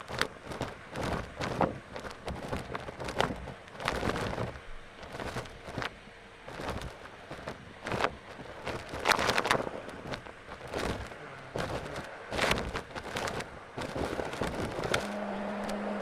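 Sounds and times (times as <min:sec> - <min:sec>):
scratchy crackling: 0:00.0 - 0:16.0
vacuum cleaner motor humming: 0:15.0 - 0:16.0.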